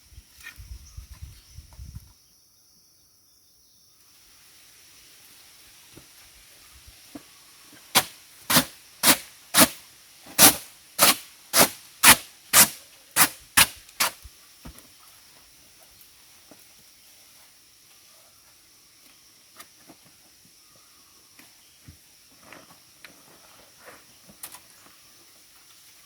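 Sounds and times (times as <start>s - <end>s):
chopping blows on wood: 8.0s - 9.8s, 10.4s - 14.2s.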